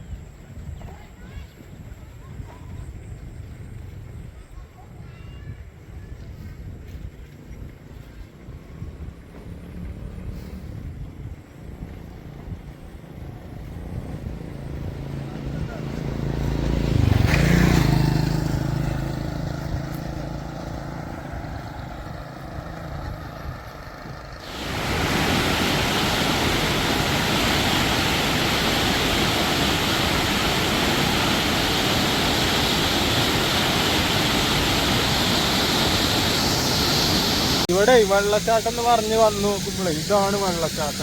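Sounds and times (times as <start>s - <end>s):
vehicle engine: 7.6s - 41.0s
waterfall rushing: 24.4s - 41.0s.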